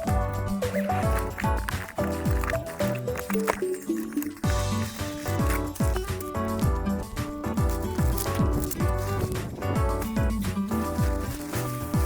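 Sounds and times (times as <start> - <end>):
kick drum beat: 0.0 - 2.5, 5.4 - 11.4.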